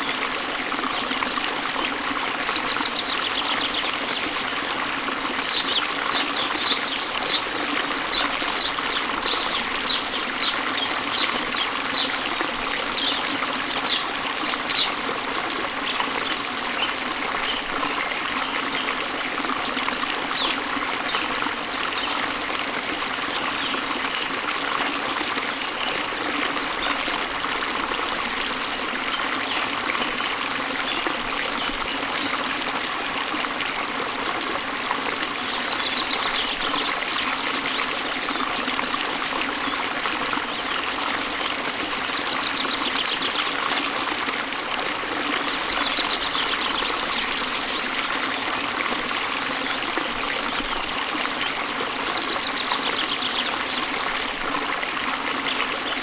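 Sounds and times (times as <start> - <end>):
waterfall rushing: 0.0 - 15.6
small birds chirping: 5.4 - 15.0.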